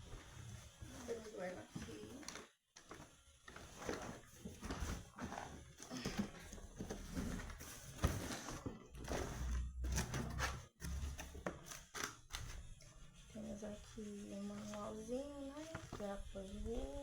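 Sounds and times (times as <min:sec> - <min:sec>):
cardboard packaging scraping and rustling: 0:00.1 - 0:12.7.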